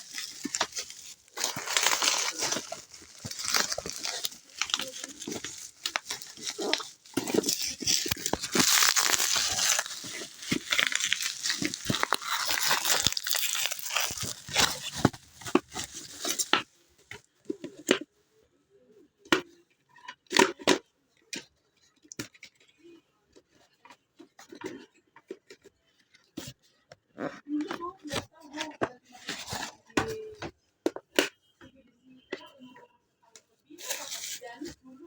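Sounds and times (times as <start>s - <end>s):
packaging tearing and crinkling: 0.0s - 16.6s.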